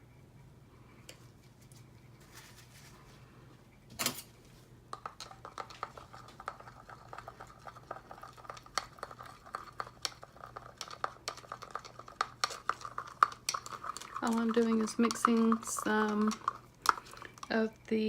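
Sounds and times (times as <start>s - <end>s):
utensil clinking against cup: 10.7s - 17.5s.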